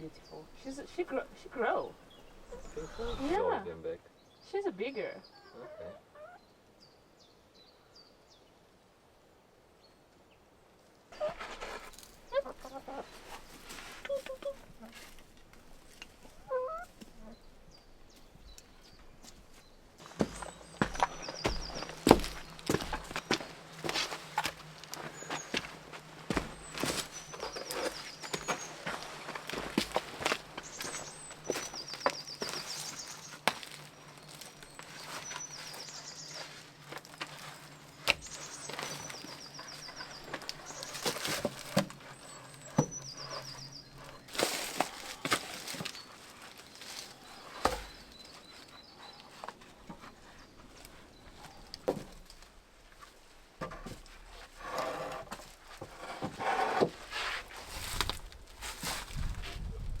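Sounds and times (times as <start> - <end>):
small bird singing: 0.0 - 8.5, 16.3 - 49.6
footsteps outdoors: 11.2 - 60.0.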